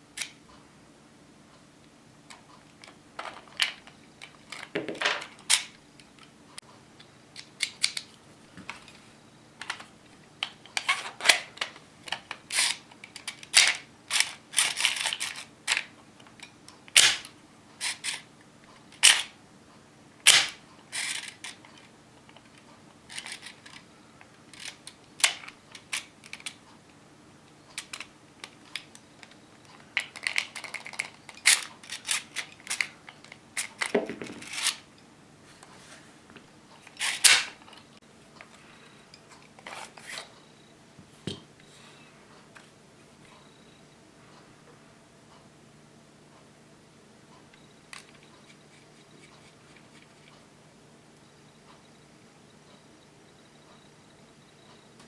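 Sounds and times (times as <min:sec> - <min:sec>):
plastic toy pistol clicks and snaps: 0:16.9 - 0:18.2, 0:20.3 - 0:21.3.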